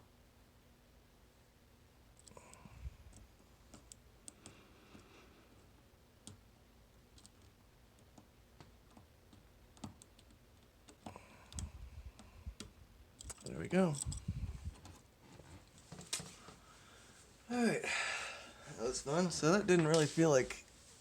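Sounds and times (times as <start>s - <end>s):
lock pick metallic clicks: 12.6s - 14.3s.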